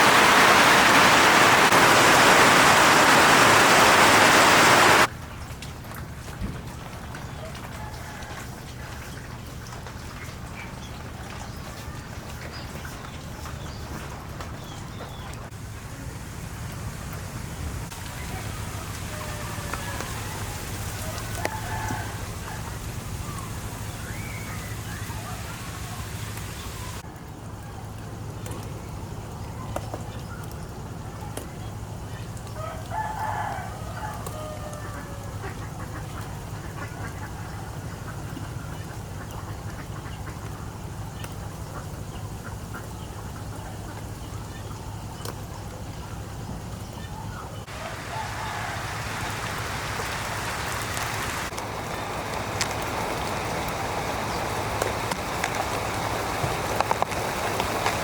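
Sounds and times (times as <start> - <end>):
steady rain falling: 0.0 - 58.0
rooster crowing: 18.7 - 22.8, 32.6 - 35.4, 47.7 - 51.2
small birds peeping: 34.0 - 58.0.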